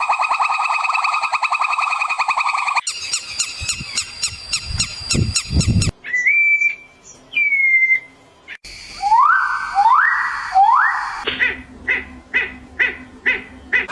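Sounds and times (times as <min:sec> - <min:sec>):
fast pulsed animal trill: 0:00.0 - 0:04.4
rapid repeated chirps: 0:00.0 - 0:05.9.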